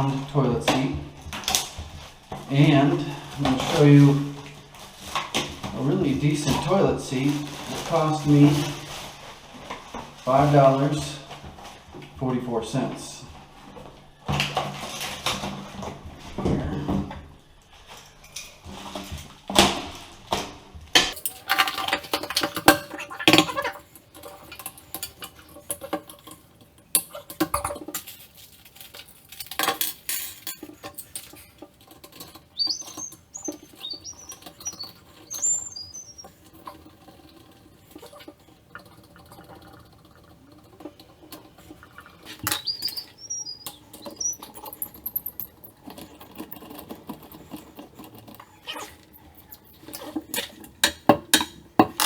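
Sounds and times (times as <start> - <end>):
plastic toilet seat clicks and scraping: 21.1 - 33.8, 45.7 - 52.0
short high squeaks: 21.2 - 39.4, 40.3 - 50.9.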